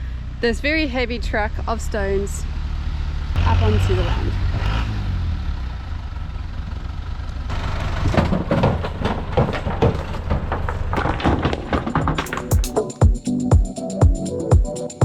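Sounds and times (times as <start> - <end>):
truck engine rumbling: 0.0 - 13.4
knocks and clattering: 7.5 - 13.2.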